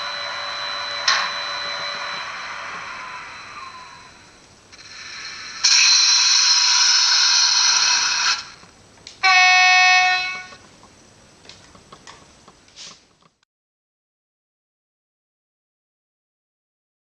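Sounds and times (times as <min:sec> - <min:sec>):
model locomotive horn: 0:09.2 - 0:10.6.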